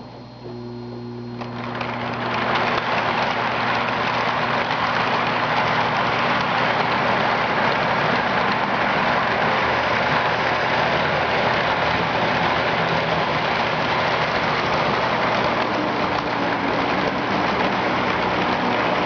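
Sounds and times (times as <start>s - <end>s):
faint low hum: 0.0s - 1.6s
model train wheels on track: 1.4s - 19.0s.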